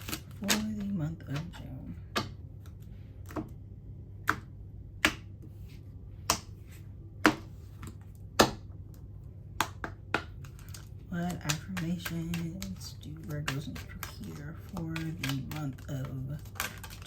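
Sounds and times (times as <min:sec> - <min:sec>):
cards being shuffled: 0:00.0 - 0:01.6, 0:09.8 - 0:17.0
low steady hum: 0:00.0 - 0:17.0.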